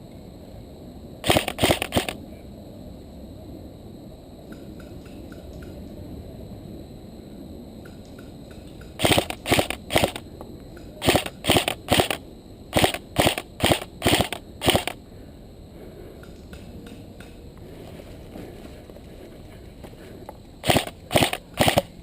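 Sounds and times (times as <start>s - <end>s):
footsteps crunching on dry ground: 17.6s - 20.1s.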